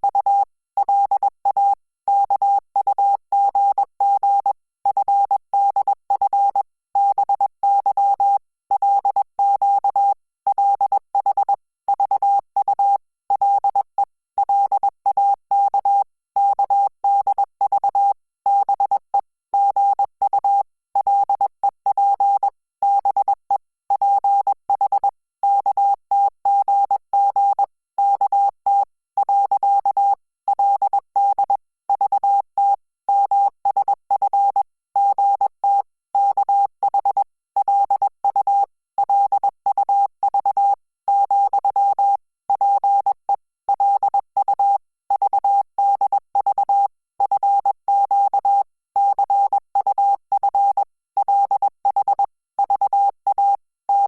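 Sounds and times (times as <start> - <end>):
morse code beeps: 30.7 - 54.0.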